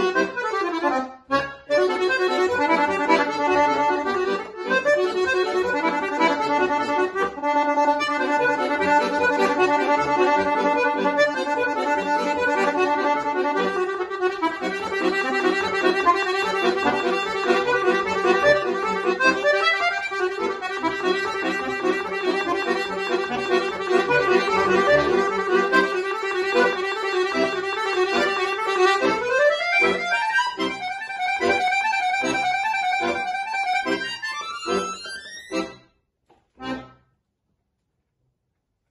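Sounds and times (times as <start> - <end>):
solo accordion playing: 0.0 - 36.0, 36.6 - 37.1.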